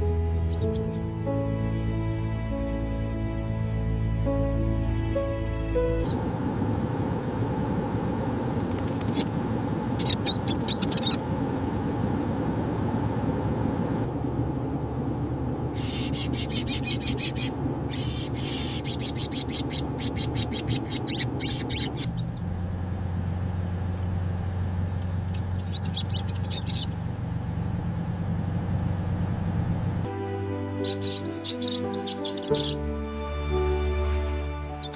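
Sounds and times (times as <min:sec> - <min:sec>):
steady low rumble: 0:00.0 - 0:34.9
goldfinch chirping: 0:00.4 - 0:01.0, 0:10.0 - 0:11.2, 0:15.8 - 0:22.2, 0:25.3 - 0:26.9, 0:30.7 - 0:32.8.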